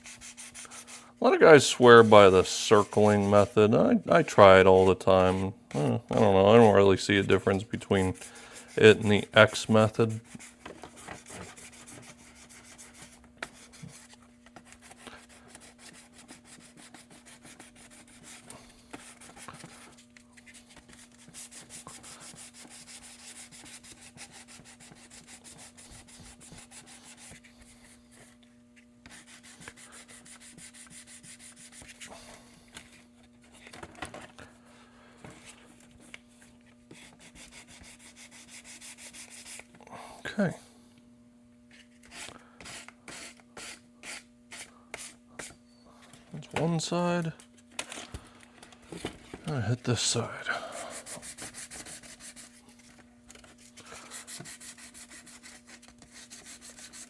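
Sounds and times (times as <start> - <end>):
sandpaper rubbing on plastic: 0.0 - 3.6, 4.5 - 28.2, 29.0 - 32.1, 36.9 - 39.7, 50.2 - 52.9, 53.5 - 57.0.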